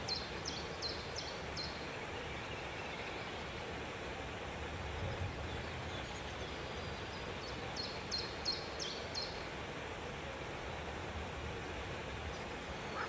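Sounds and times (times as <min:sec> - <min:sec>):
steady background hiss: 0:00.0 - 0:13.0.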